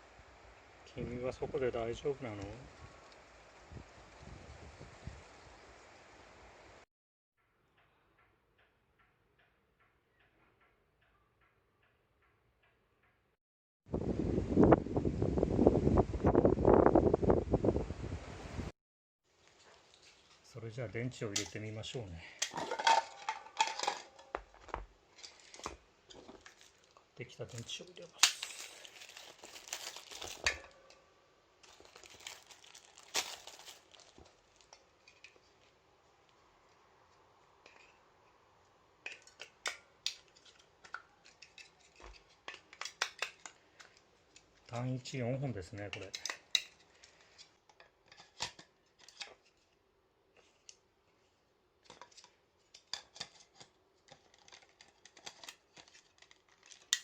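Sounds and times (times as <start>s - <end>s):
plastic packaging crinkling and tearing: 25.2s - 30.9s, 31.6s - 35.8s, 51.9s - 57.0s.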